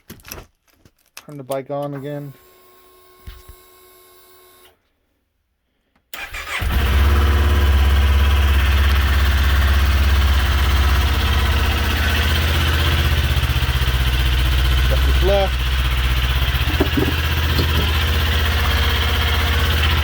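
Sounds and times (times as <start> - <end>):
motorcycle engine starting and idling: 6.2 - 20.0.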